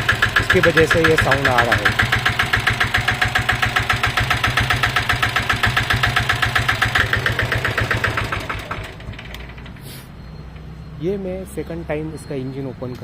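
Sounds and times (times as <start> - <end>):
diesel engine idling with knock: 0.0 - 10.7.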